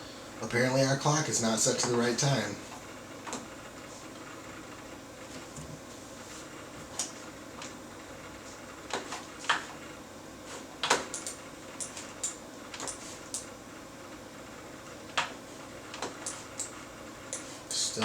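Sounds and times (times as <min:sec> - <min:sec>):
low room hum: 0:00.0 - 0:18.0.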